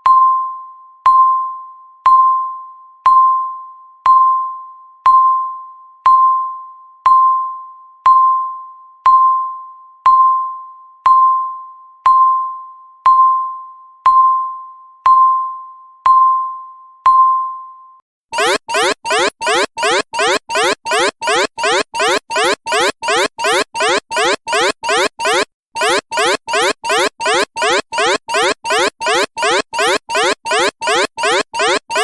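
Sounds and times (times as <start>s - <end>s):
countdown timer beeps: 18.4s - 32.0s.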